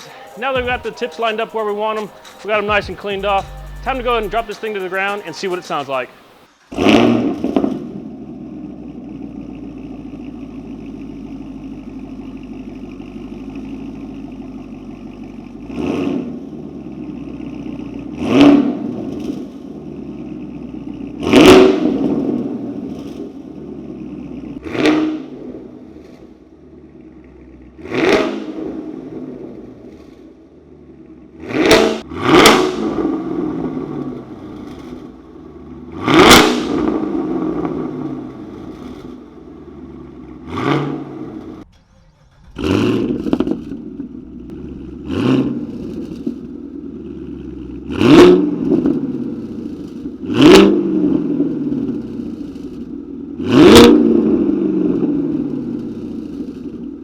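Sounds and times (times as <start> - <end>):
car engine idling and revving: 0.0 - 57.0.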